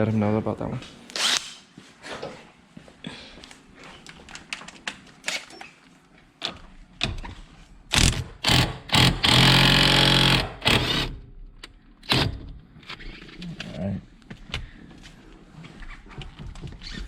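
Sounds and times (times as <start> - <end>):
cordless power tool buzzing: 8.4 - 11.2.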